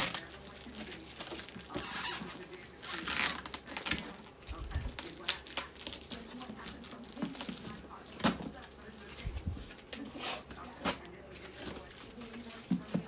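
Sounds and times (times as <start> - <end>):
cardboard rustling and tearing: 0.0 - 13.0.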